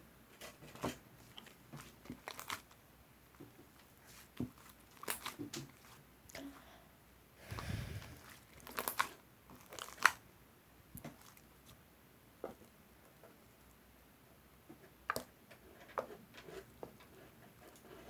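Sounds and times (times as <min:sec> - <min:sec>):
slime squishing: 0:01.2 - 0:02.8, 0:03.4 - 0:06.5, 0:07.5 - 0:10.2.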